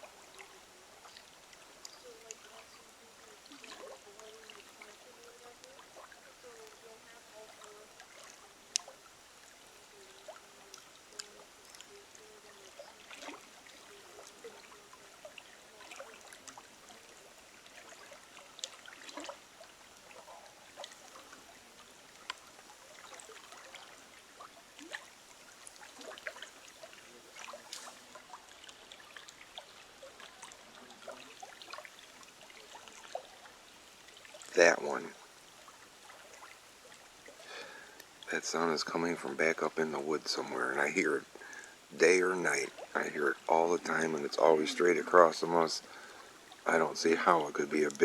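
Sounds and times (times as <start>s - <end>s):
faint scattered clicks: 0.0s - 36.5s, 37.1s - 38.6s
water trickling: 0.0s - 48.0s.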